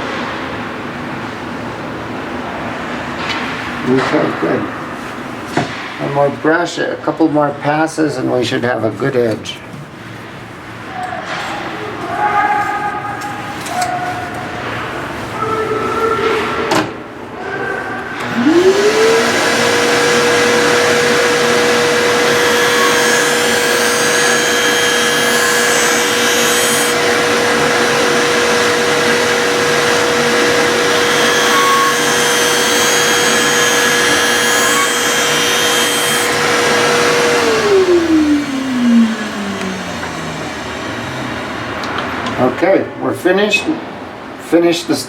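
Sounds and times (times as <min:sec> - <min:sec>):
grinding wheel motor humming: 0:18.0 - 0:42.4.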